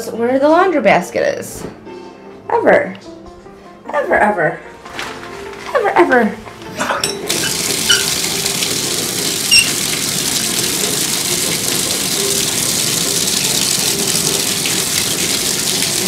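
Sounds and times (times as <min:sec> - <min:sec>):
shower water running: 0:06.2 - 0:16.0.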